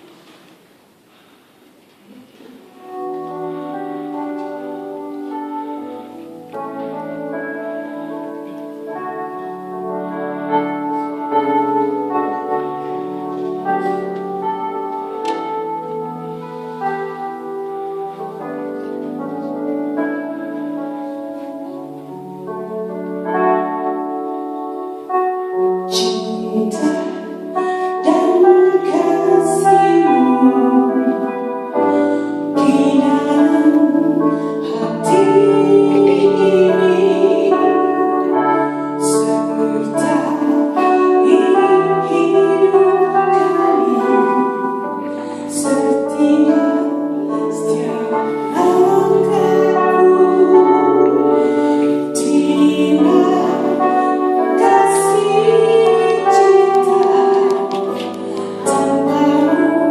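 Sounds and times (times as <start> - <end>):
instrumental accompaniment: 0.0 - 59.9
sustained keyboard chords: 1.8 - 59.9
person singing long notes: 2.1 - 59.9.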